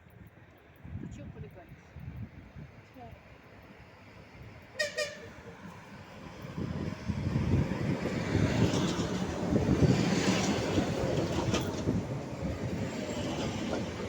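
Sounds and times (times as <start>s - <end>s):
train rumbling past: 3.1s - 14.0s
rail joint clicks: 7.3s - 14.0s.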